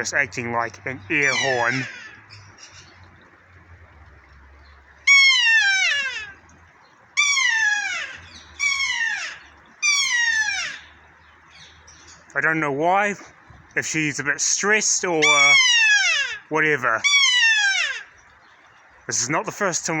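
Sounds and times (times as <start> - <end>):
parrot squealing calls: 1.1 - 2.9, 5.0 - 6.4, 7.2 - 11.8, 15.2 - 18.2.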